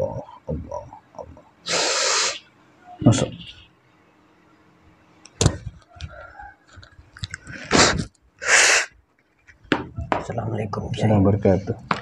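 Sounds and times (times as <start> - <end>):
person breathing sharply: 1.7 - 2.4, 7.5 - 9.0
hissing exhale: 1.7 - 2.5, 7.5 - 9.0.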